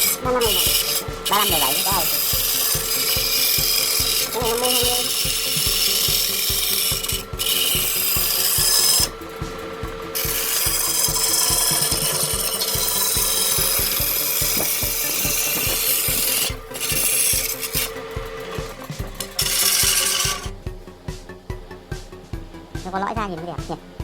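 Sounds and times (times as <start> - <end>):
tool scraping spinning wood: 0.0 - 21.3
lathe motor hum: 0.0 - 24.0.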